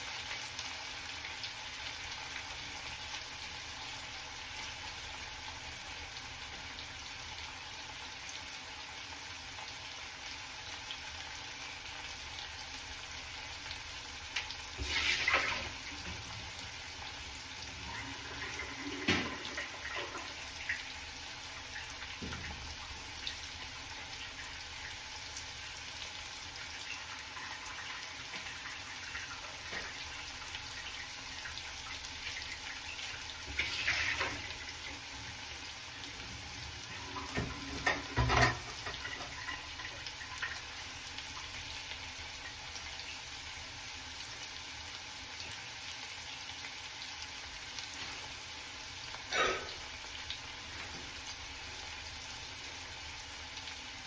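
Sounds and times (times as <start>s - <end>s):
potatoes sizzling in oil: 0.0s - 54.0s.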